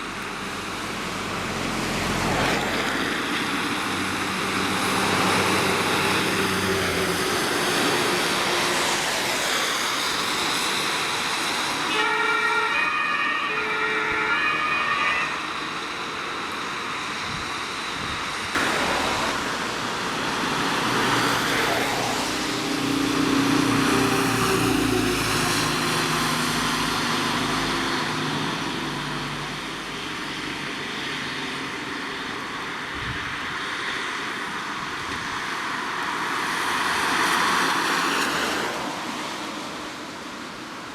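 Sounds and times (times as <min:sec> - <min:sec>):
heavy vehicles passing: 0:00.0 - 0:40.9
two-tone siren: 0:11.9 - 0:15.7.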